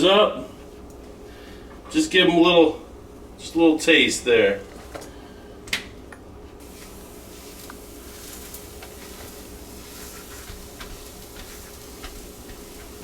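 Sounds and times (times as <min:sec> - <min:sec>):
faint hum: 0:00.0 - 0:13.0
butter sizzling in a pan: 0:06.6 - 0:13.0
light crackles: 0:06.6 - 0:13.0.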